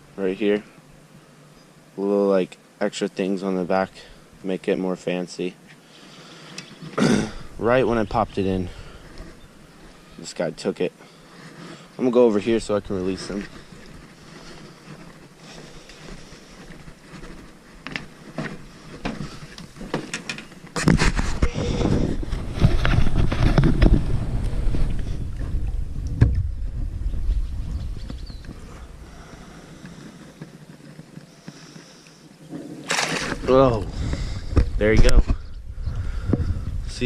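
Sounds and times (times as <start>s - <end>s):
footsteps: 11.2s - 25.6s
heavy low rumbling: 21.2s - 29.8s, 33.4s - 37.0s.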